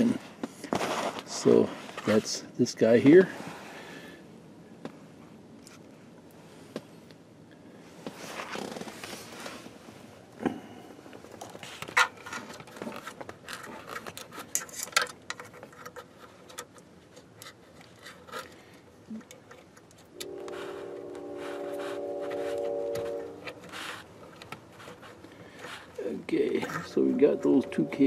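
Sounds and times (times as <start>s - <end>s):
cable scraping and rustling: 0.4s - 3.5s, 8.0s - 10.1s, 11.1s - 28.0s.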